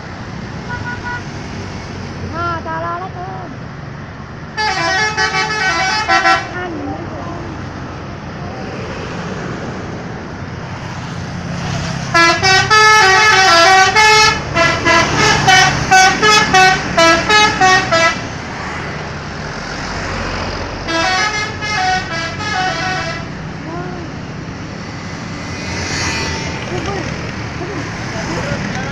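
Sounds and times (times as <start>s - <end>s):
bus musical horn tune: 0.7s - 1.2s, 4.6s - 6.6s, 12.1s - 18.2s, 20.9s - 23.3s.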